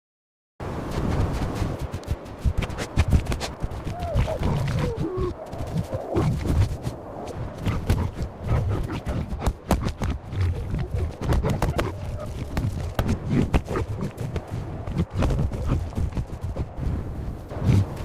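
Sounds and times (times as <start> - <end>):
animal cries: 10.5 - 12.5.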